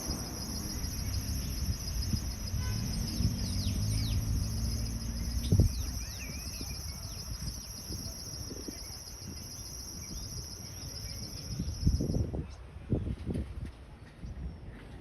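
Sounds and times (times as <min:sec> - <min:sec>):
constant high hiss: 0:00.0 - 0:11.8
high bird chirps: 0:00.0 - 0:12.2
vehicle engine humming low: 0:00.0 - 0:12.2.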